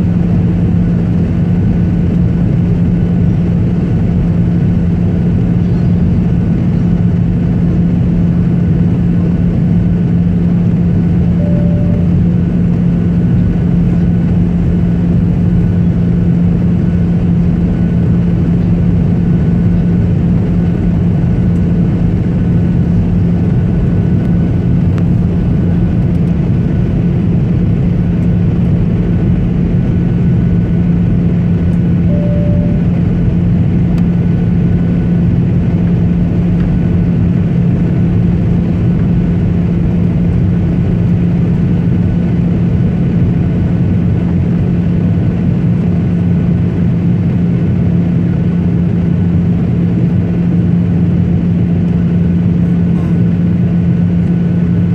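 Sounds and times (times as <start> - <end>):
airliner cabin engine drone: 0.0 - 54.9
short beep: 11.3 - 12.4, 32.0 - 33.2.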